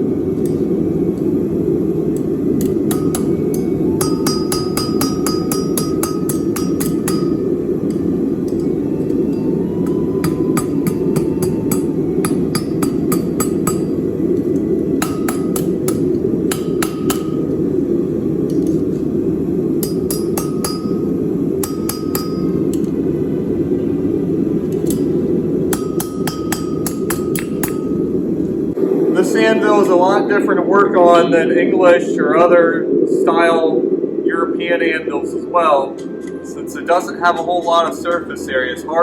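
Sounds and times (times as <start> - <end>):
low rushing noise: 0.0 - 39.0
hammer striking anvil: 2.9 - 7.4, 10.2 - 13.9, 15.0 - 17.4, 19.8 - 21.0, 21.6 - 22.6, 25.7 - 28.0.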